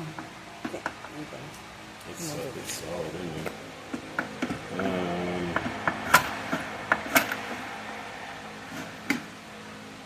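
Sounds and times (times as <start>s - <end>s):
person humming: 4.7s - 5.6s.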